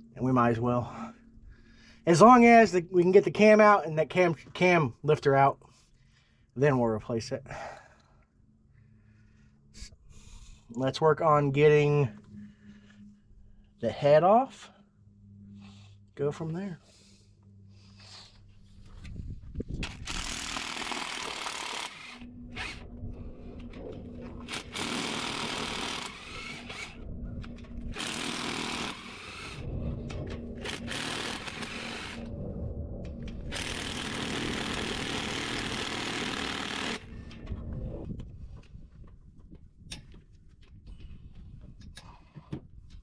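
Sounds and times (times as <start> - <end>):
power tool spinning out bolts: 30.6 - 32.2.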